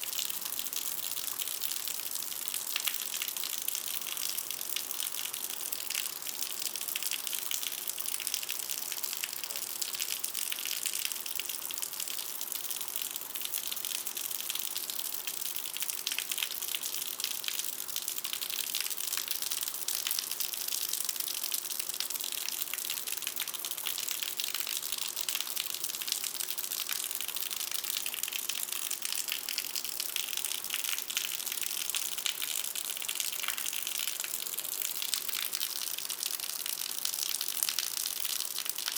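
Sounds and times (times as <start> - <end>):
heavy rain on concrete: 22.2 - 38.9.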